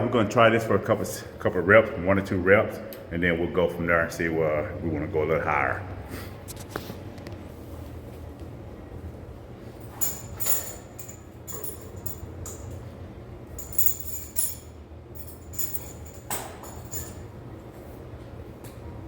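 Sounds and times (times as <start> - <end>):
fans humming: 0.0 - 19.0
weight plates clinking: 9.8 - 12.8, 13.6 - 17.3.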